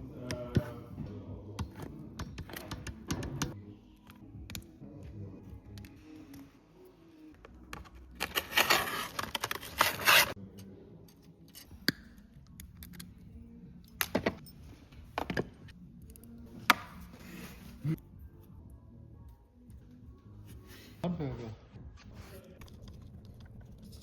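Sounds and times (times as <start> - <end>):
scraping and rubbing metal parts: 8.0 - 10.4.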